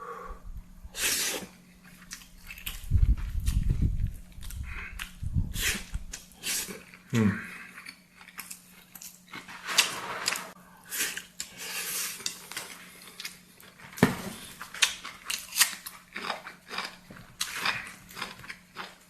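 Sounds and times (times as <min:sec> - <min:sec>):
chewing and biting food: 0:01.8 - 0:09.5, 0:14.5 - 0:19.0.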